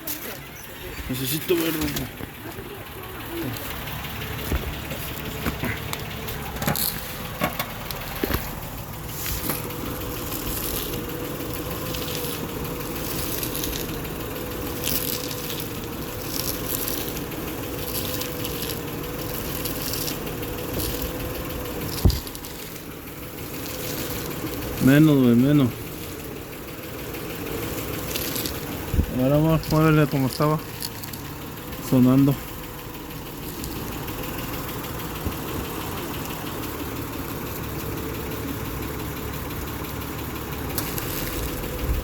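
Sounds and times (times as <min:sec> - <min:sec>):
car engine idling: 0:00.0 - 0:42.0
steering whine: 0:00.0 - 0:42.0.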